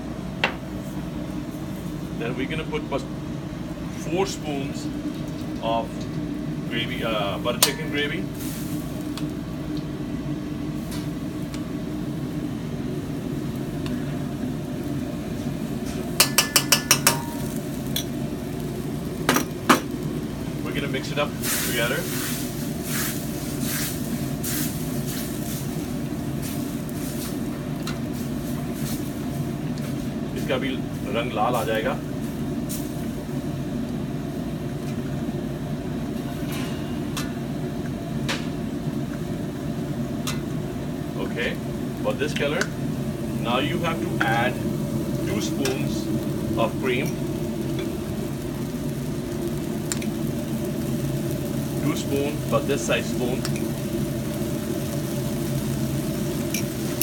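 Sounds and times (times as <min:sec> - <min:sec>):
steady low hum: 0:00.0 - 0:57.0
spoon tapping pan rim: 0:16.2 - 0:17.5.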